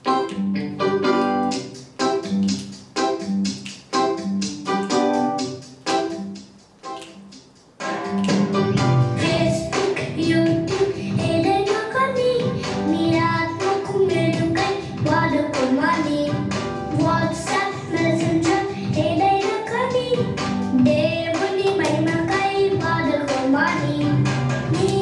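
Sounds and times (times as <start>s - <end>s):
music with a steady beat: 0.0s - 25.0s.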